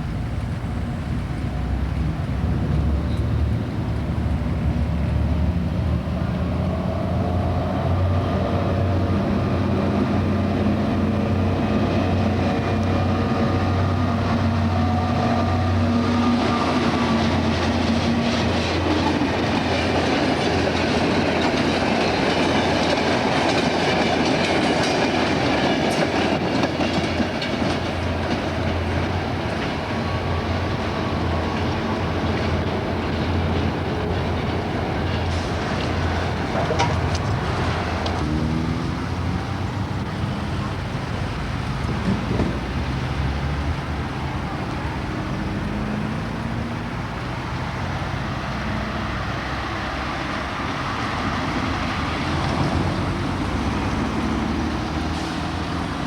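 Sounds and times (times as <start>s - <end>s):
locomotive diesel engine humming: 0.0s - 56.0s
train wheels clacking over rail joints: 9.3s - 39.5s, 41.7s - 43.0s.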